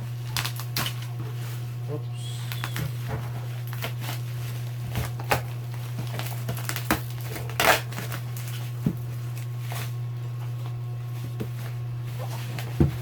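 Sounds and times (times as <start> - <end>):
packaging crinkling: 0.2 - 10.0.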